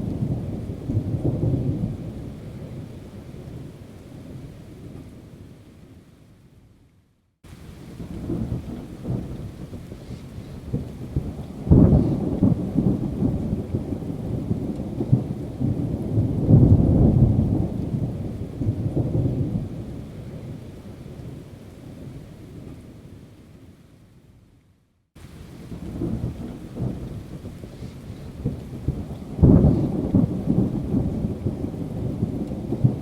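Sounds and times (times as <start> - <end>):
thunder rumbling: 7.6 - 20.6, 25.3 - 33.0
sharp thunder crack: 10.7 - 13.4, 25.8 - 33.0.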